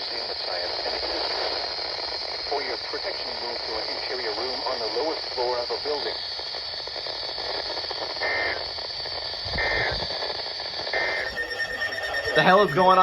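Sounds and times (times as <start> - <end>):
radio static: 0.0 - 13.0
digital data burst squawks: 8.2 - 13.0.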